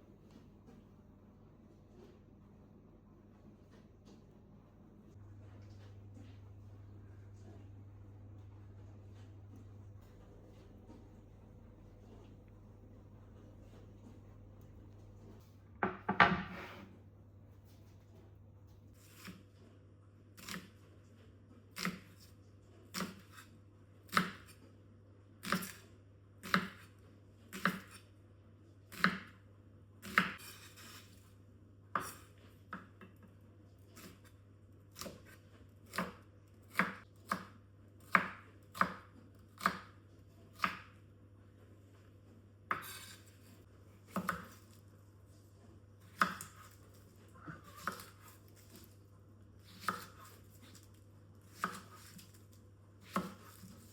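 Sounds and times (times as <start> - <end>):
knife chopping on cutting board: 24.1 - 24.6, 26.4 - 26.9, 27.5 - 28.0, 28.9 - 29.3, 31.9 - 33.2, 35.0 - 40.0, 40.6 - 41.0, 42.7 - 43.3, 44.1 - 44.7, 46.1 - 46.8, 47.4 - 48.7, 49.6 - 50.8, 51.5 - 52.4, 53.0 - 53.9.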